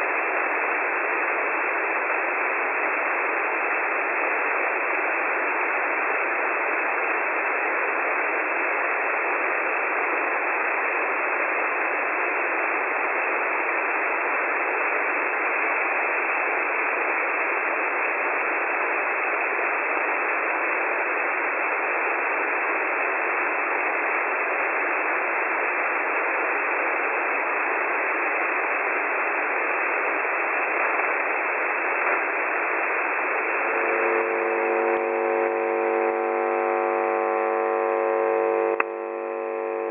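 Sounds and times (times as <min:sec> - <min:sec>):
shortwave radio static: 0:18.6 - 0:39.9
low buzzer tone: 0:33.6 - 0:39.9.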